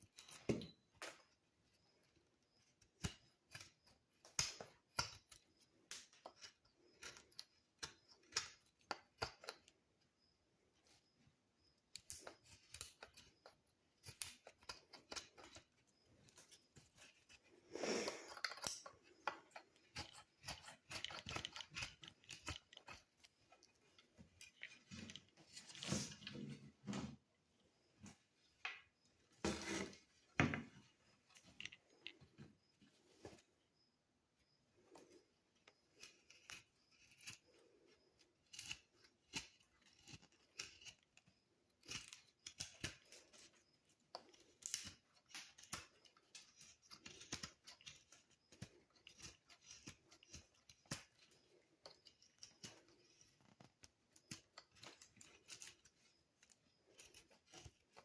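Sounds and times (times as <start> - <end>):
knife clicks and scrapes: 2.6 - 9.8, 11.8 - 26.2, 34.8 - 58.0.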